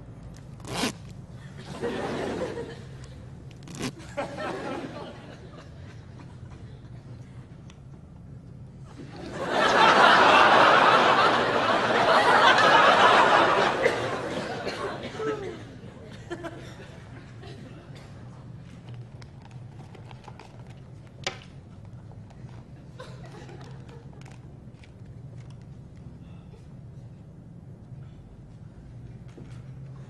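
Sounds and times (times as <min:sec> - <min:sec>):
audience laughter: 0:01.6 - 0:03.1, 0:04.1 - 0:06.6, 0:08.9 - 0:17.9.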